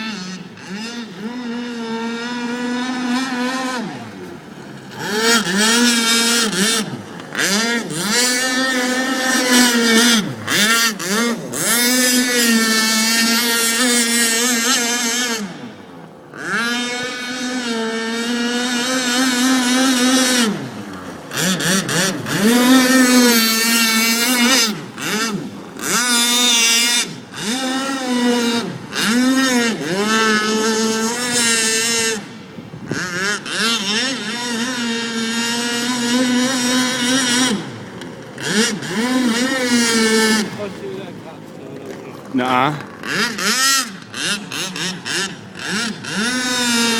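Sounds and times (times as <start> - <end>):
electric motor whining: 0.0 - 46.9.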